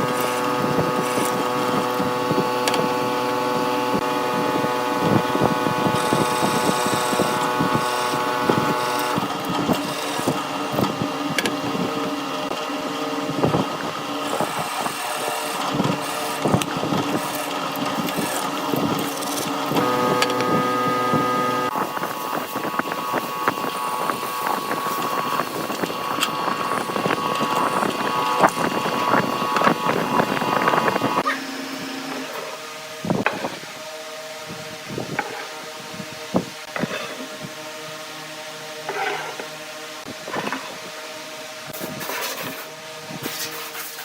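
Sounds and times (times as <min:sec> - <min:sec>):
power tool motor humming: 0:00.0 - 0:44.0.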